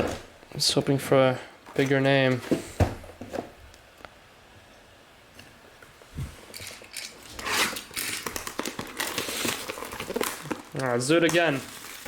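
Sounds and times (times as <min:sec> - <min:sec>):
packaging crinkling and rustling: 0:06.4 - 0:12.0.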